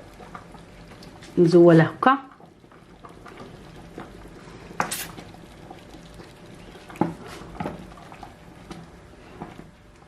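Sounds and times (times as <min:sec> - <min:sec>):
soup simmering in a pot: 0:00.0 - 0:10.0.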